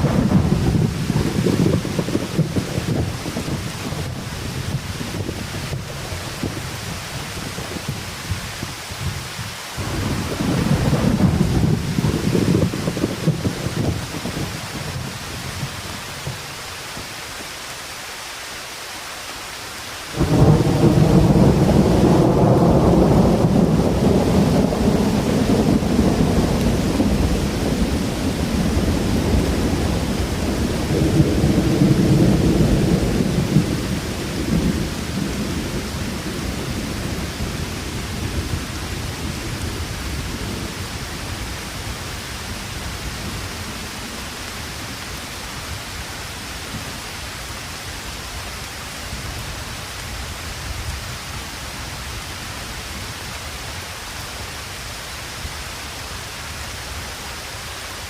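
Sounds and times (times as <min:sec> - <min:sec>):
low rumble of thunder: 0:00.0 - 0:16.4, 0:20.2 - 0:47.1
rain hissing: 0:00.0 - 0:58.0.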